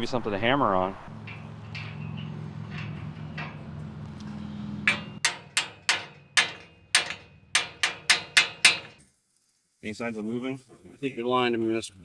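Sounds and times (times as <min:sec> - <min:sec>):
hammer striking steel: 0:01.1 - 0:09.0
low steady hum: 0:01.1 - 0:09.0.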